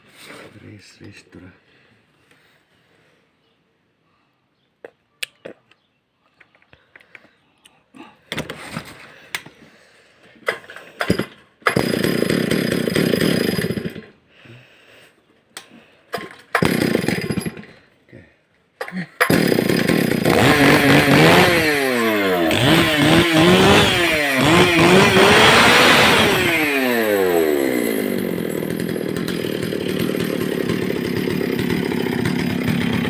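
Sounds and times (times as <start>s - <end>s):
chainsaw starting: 10.4s - 14.2s, 16.2s - 17.9s, 18.8s - 33.0s.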